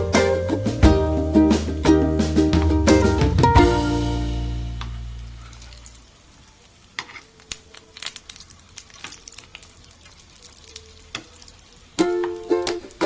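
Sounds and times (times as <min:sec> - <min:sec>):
ukulele music: 0:00.0 - 0:05.8, 0:12.0 - 0:13.0
food sizzling in hot oil: 0:04.6 - 0:12.7
oil crackling and popping: 0:04.6 - 0:13.0.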